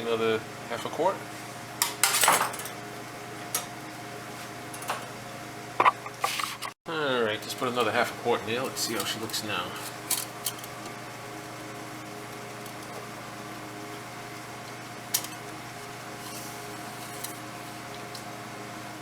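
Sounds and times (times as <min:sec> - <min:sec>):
steady mechanical hum: 0:00.0 - 0:19.0.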